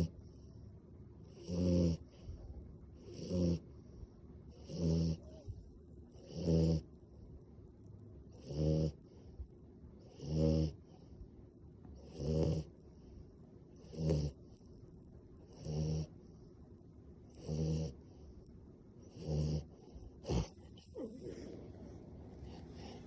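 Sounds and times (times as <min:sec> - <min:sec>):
dog snoring: 0:01.3 - 0:02.4, 0:03.0 - 0:03.7, 0:04.5 - 0:06.9, 0:08.3 - 0:09.3, 0:10.0 - 0:11.0, 0:12.0 - 0:12.8, 0:13.8 - 0:14.7, 0:15.5 - 0:16.2, 0:17.3 - 0:18.4, 0:19.0 - 0:23.0.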